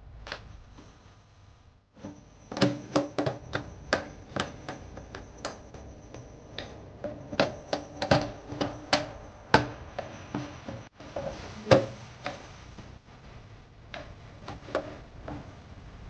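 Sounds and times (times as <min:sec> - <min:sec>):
knocks and clicks of hard objects: 0:02.0 - 0:12.9.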